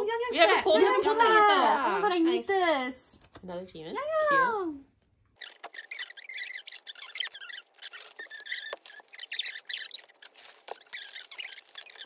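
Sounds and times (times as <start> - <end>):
paper and plastic rustling: 5.4 - 12.0.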